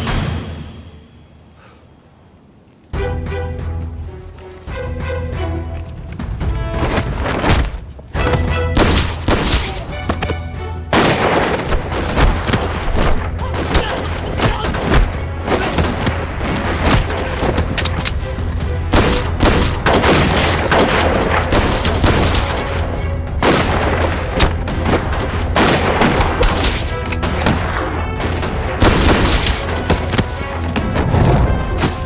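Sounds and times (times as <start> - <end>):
dramatic background music: 0.0 - 1.6, 2.9 - 32.0
gunshots: 8.7 - 10.0, 10.9 - 18.2, 18.8 - 22.8, 23.4 - 32.0
booming explosions: 10.9 - 32.0.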